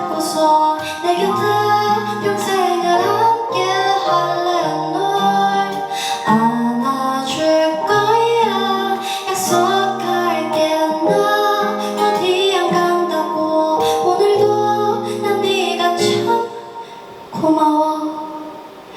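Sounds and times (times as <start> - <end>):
plucked guitar: 0.0 - 17.5
woman singing wordless melody: 0.0 - 18.7.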